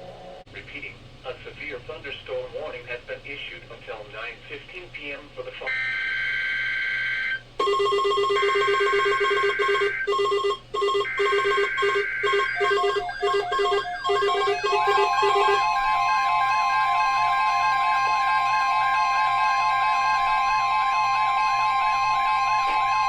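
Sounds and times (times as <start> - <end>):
rapid pulsing beeps: 7.6 - 16.2
warbling digital data tones: 7.6 - 16.3
electronic tune: 7.6 - 23.0.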